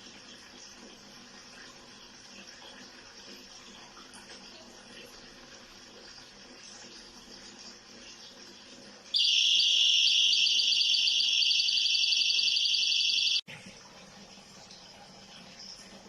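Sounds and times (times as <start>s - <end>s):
high-pitched alarm buzzer: 9.2s - 13.4s.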